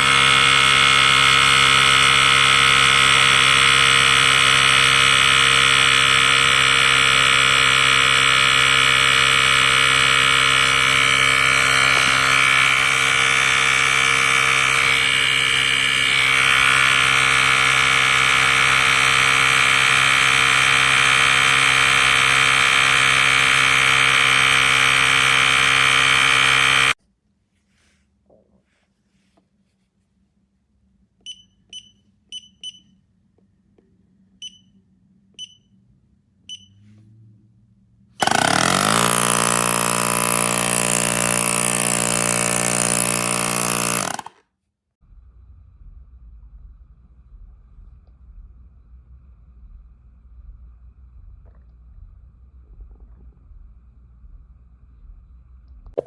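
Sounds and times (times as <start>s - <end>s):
air compressor droning: 0.0s - 27.0s, 38.2s - 44.4s.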